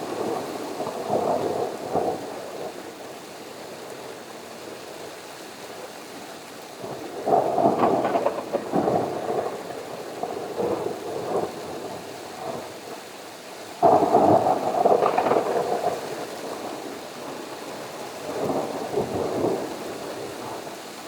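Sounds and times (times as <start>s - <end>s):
steady rain: 0.0s - 21.0s
thunder rumbling: 6.8s - 12.7s, 13.8s - 20.7s.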